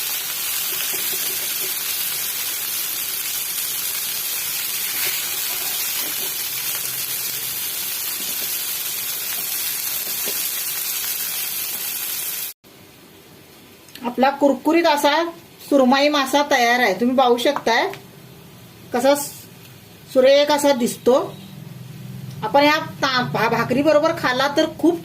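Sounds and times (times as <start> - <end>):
fish sizzling in hot oil: 0.0 - 12.6.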